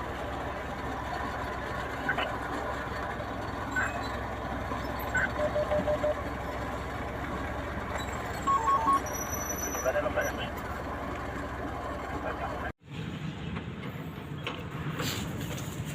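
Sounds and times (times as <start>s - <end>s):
heavy machinery rumbling: 0.0s - 15.9s
short beeps: 3.7s - 4.2s, 4.9s - 6.2s, 8.4s - 9.9s.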